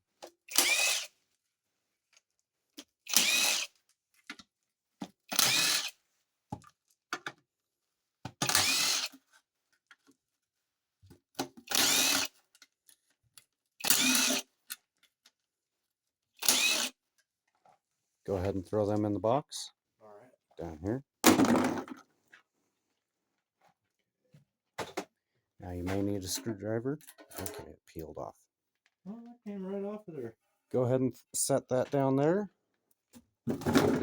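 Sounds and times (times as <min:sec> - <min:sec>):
power drill motor whine: 0:00.5 - 0:01.1, 0:03.1 - 0:03.7, 0:05.3 - 0:05.9, 0:08.5 - 0:09.1, 0:11.7 - 0:12.3, 0:13.8 - 0:14.4, 0:16.4 - 0:16.9.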